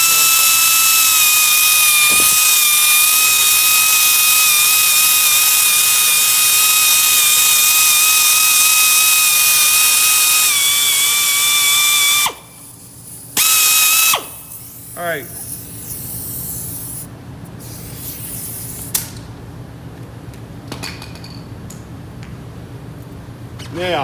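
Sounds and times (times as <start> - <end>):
drill whining: 0.0 - 12.6, 13.4 - 14.6.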